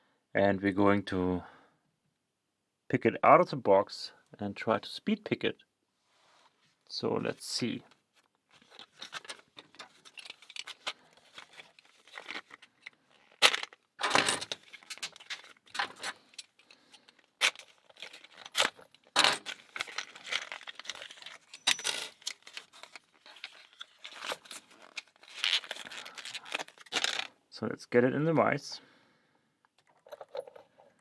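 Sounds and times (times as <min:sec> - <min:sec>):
packaging rustling and tearing: 0:08.6 - 0:21.5, 0:22.2 - 0:27.3
keys jingling: 0:18.5 - 0:22.3.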